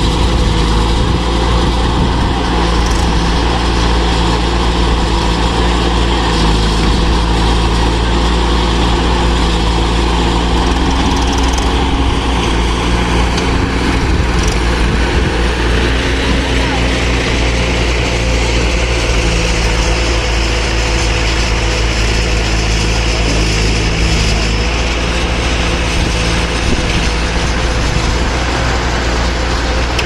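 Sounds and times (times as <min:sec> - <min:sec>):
heavy diesel engine droning: 0:00.0 - 0:30.0.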